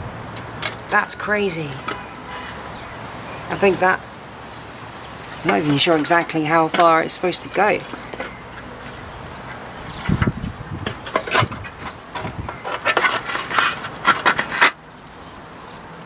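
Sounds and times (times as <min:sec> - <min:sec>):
scraping knocking and crackling: 0:04.7 - 0:14.8.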